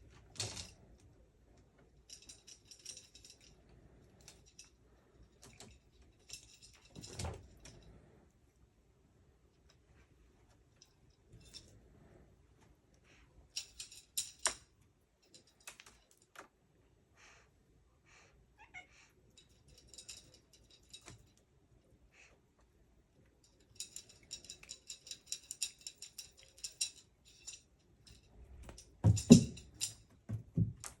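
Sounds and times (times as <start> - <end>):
toy clicks and rattles: 2.0 - 3.6, 4.2 - 7.8, 13.6 - 16.4, 19.4 - 21.4, 23.4 - 30.0
heavy thump: 29.0 - 29.6.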